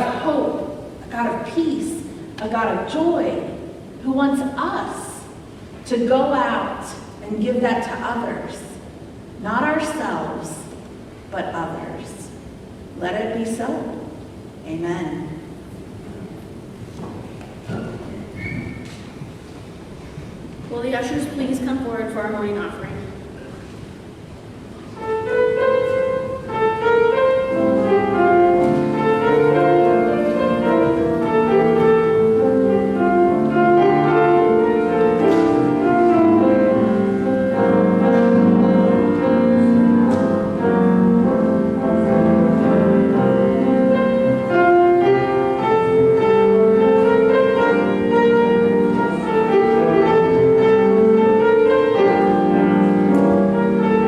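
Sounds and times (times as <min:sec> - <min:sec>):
instrumental piano music: 0:00.0 - 0:03.8, 0:24.8 - 0:54.0.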